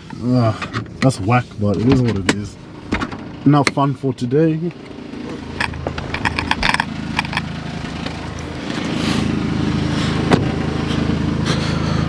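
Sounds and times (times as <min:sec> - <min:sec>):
car engine idling: 0:00.0 - 0:12.0
sharp clicks and knocks: 0:04.8 - 0:08.4.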